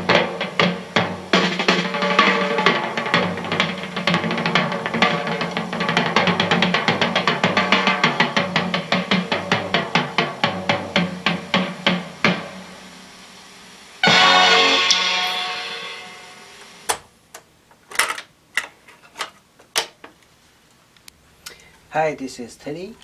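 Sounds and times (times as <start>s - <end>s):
percussion music from speakers: 0.0s - 13.0s, 14.0s - 16.5s
faint tape hiss: 0.0s - 23.0s.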